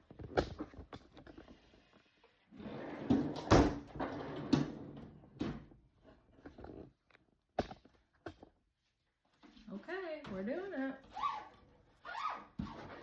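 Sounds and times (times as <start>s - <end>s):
rustling and scraping in refrigerator: 8.9s - 13.0s.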